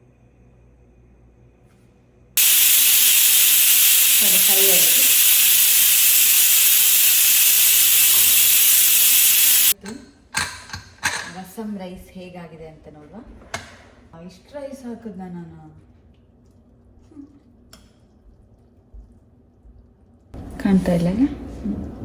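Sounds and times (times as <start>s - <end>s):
pressure cooker steam hissing: 2.4s - 9.8s.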